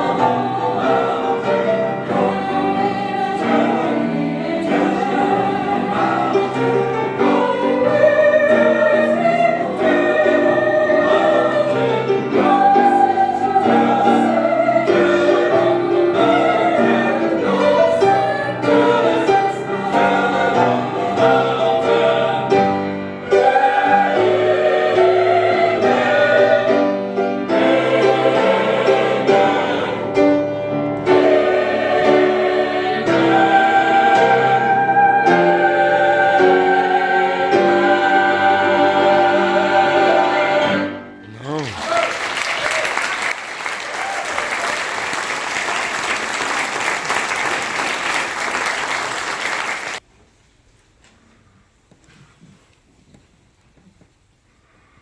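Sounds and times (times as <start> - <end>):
choir singing in harmony: 0.0 - 41.4.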